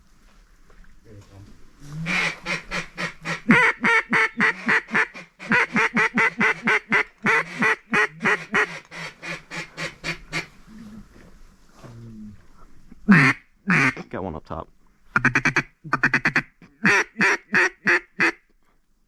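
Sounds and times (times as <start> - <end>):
duck call quacks: 2.0 - 10.5, 13.1 - 14.0, 15.2 - 18.4.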